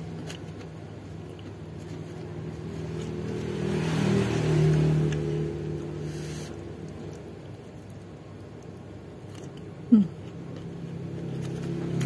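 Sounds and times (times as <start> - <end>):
motor vehicle passing by: 1.8 - 7.4, 10.6 - 12.0.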